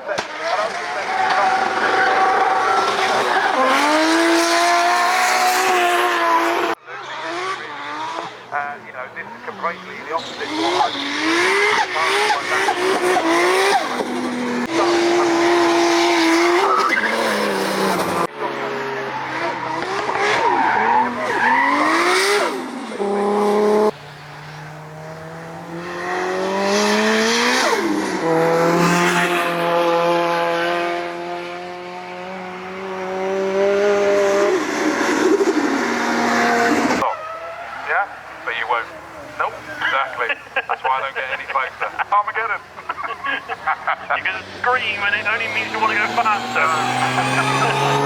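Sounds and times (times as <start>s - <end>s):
car engines revving: 0.0s - 48.0s
tyre squeal and skidding: 0.6s - 4.0s, 10.1s - 14.2s, 16.3s - 18.2s, 18.8s - 23.0s, 34.2s - 38.4s.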